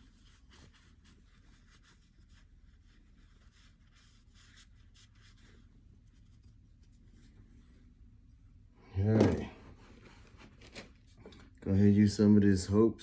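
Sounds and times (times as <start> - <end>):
rifle parts rubbing and scraping: 9.1 - 11.5.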